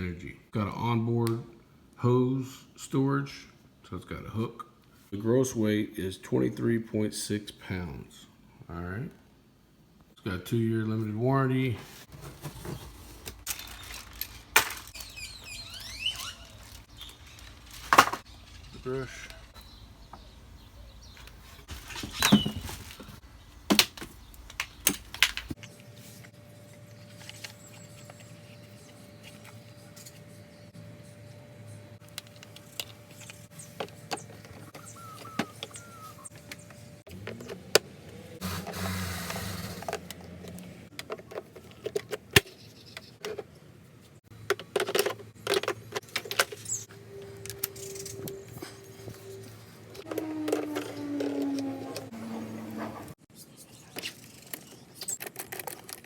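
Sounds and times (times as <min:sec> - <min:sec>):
rustling noise: 0:11.7 - 0:19.6, 0:21.2 - 0:23.3
clicks and rattles of parts handled: 0:12.4 - 0:15.1, 0:21.2 - 0:25.8, 0:32.0 - 0:35.7, 0:39.8 - 0:43.6, 0:44.3 - 0:48.8, 0:54.0 - 0:56.0.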